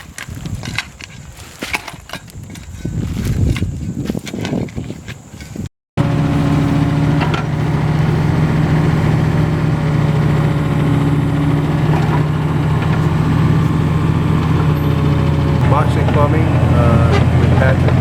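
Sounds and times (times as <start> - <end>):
engine idling: 6.0 - 18.0.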